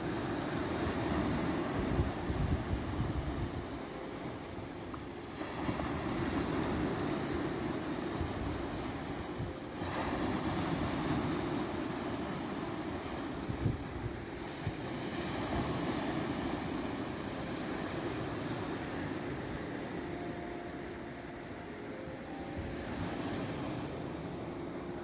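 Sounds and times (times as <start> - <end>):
wind rumbling on microphone: 0.0 - 4.0, 5.6 - 19.7
surf washing on shore: 0.0 - 25.0.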